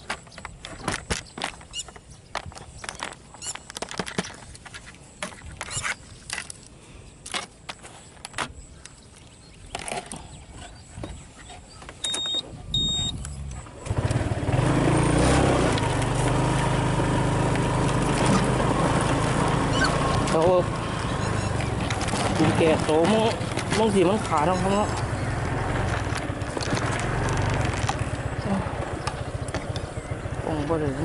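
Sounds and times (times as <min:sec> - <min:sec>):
clicks and rustles: 0:00.0 - 0:12.5, 0:17.4 - 0:30.0
short high beeps: 0:12.0 - 0:13.3
loud steady engine: 0:13.8 - 0:31.0.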